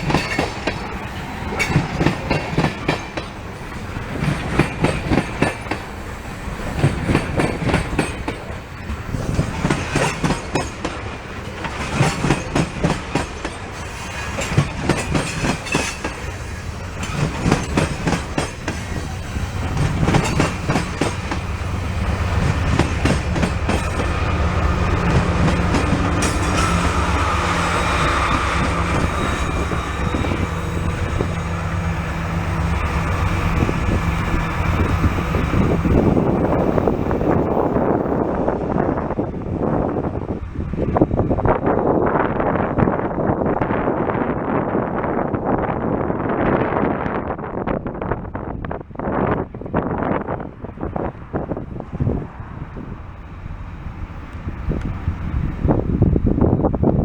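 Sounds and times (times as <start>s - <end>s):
train wheels clacking over rail joints: 0.0s - 37.6s.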